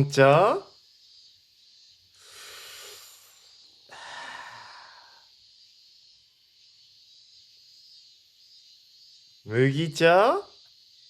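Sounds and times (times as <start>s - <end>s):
person sighing: 2.2s - 5.2s.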